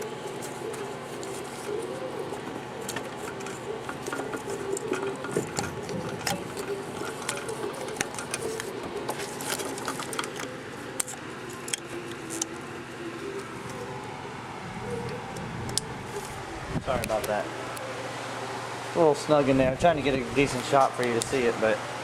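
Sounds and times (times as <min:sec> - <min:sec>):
tools clicking and rattling: 0:00.0 - 0:13.8
steady low hum: 0:00.0 - 0:22.0.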